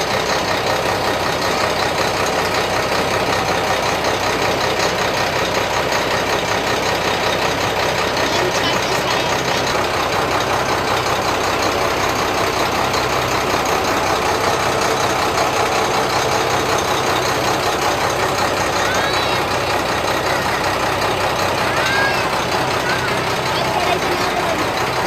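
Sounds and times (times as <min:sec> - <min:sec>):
boat engine droning: 0:00.0 - 0:25.0
faint voices: 0:06.0 - 0:12.9, 0:17.6 - 0:25.0.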